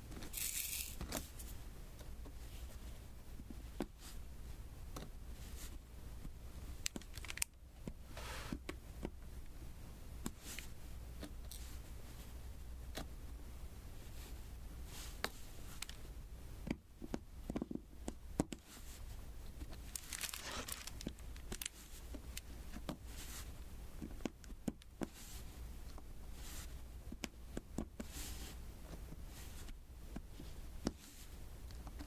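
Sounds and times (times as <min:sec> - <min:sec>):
crinkling rustle: 0:06.9 - 0:07.5, 0:19.6 - 0:22.5
small clicks and taps: 0:16.6 - 0:18.6.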